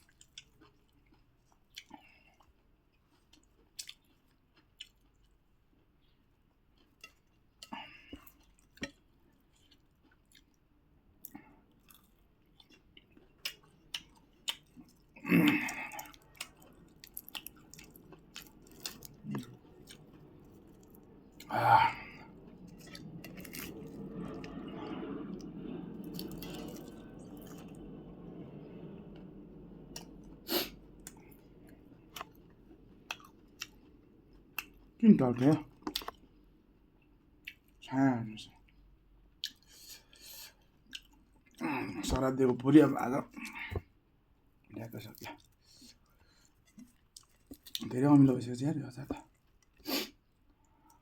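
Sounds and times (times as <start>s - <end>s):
person chewing with wet smacks: 0.0s - 28.0s, 28.6s - 36.4s, 39.4s - 42.6s, 45.0s - 48.0s
low steady murmur: 10.6s - 49.7s.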